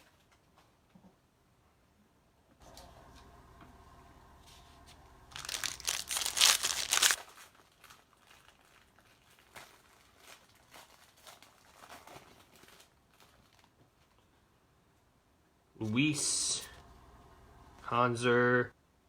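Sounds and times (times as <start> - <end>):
cards rustling: 4.2 - 13.5
wrapper crinkling and tearing: 5.2 - 14.3.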